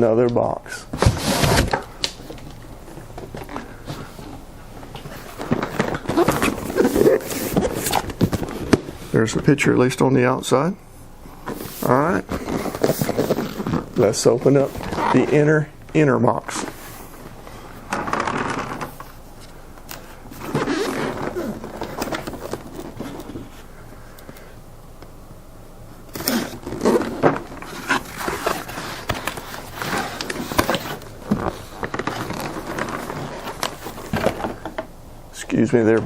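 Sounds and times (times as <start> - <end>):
cardboard box scraping and rustling: 0.9 - 1.9, 5.0 - 9.0, 11.5 - 15.4, 26.4 - 34.8.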